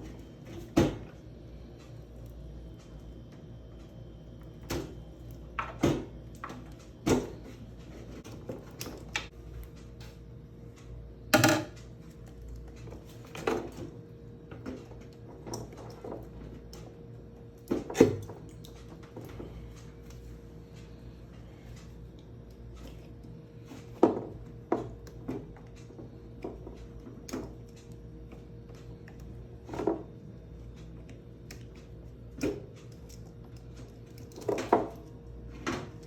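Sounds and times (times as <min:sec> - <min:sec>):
hard objects knocking and clattering: 0:11.4 - 0:11.8.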